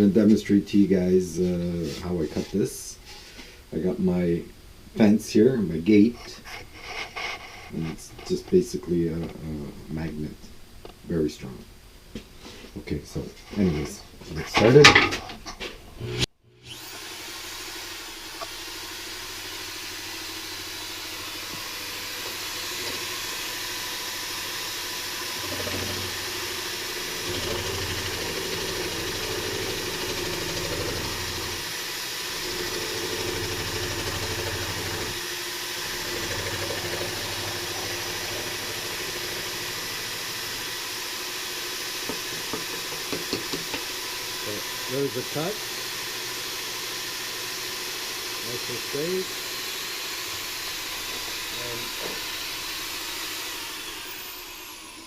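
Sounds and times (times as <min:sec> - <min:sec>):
jigsaw blade cutting plywood: 0:17.8 - 0:55.0.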